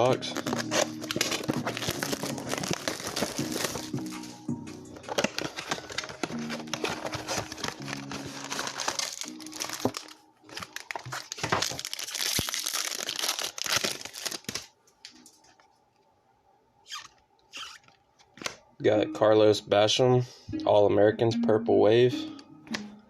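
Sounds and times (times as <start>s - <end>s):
plastic packaging tearing and crinkling: 0.0s - 15.2s.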